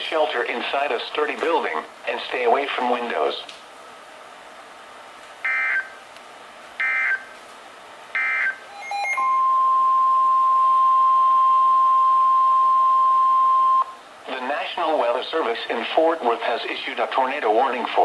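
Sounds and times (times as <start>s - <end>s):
steady warning alarm tone: 5.4s - 6.0s, 6.8s - 7.3s, 8.2s - 14.0s
digital data tone bursts: 5.5s - 6.0s, 8.2s - 13.9s.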